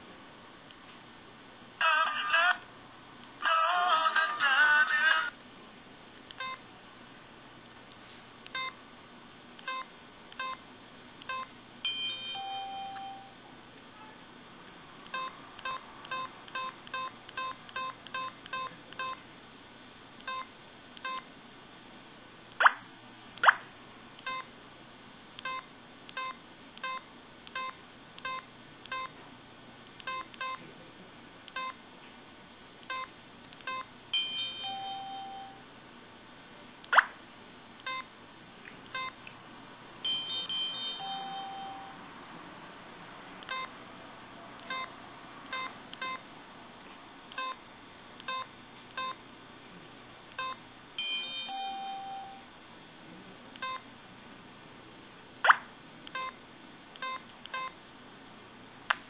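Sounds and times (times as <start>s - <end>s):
short electronic beeps: 40.2s - 42.0s
sharp phone effect sounds: 55.4s - 55.7s.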